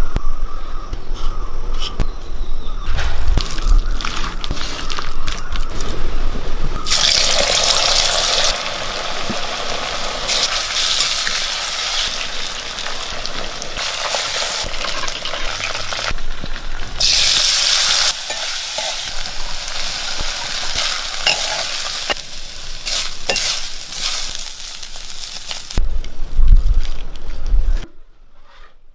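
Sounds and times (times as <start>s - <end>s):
chicken sizzling in hot oil: 6.8s - 25.8s.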